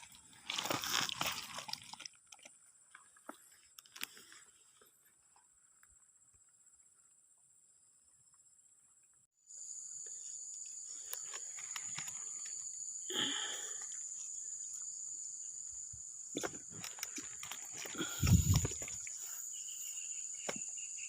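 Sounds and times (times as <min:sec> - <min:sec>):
high-pitched insect chorus: 0:05.6 - 0:21.0.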